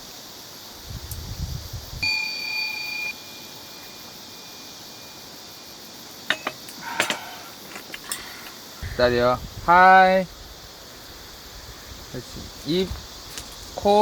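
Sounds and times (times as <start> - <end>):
insects chirring: 0.0 - 14.0
bright metallic ring: 2.0 - 5.4, 6.3 - 7.2.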